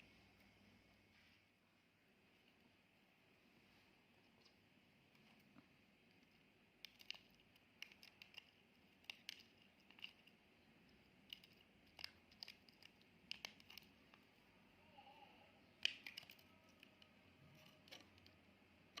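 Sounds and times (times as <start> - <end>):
room hiss: 0.0 - 6.8
small clicks and taps: 4.3 - 14.3, 15.7 - 19.0.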